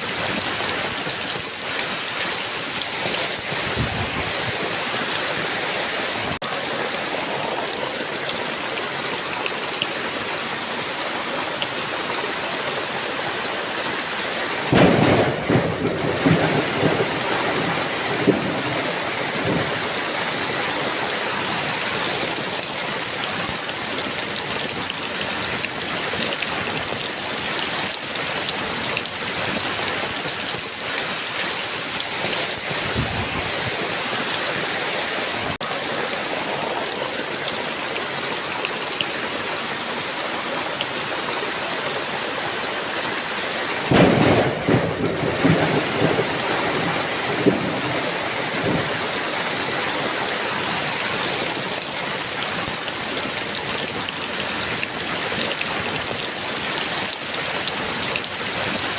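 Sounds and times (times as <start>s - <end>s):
heavy rain falling: 0.0s - 58.9s
thunder rumbling: 14.7s - 20.5s, 32.5s - 34.0s, 43.8s - 49.2s.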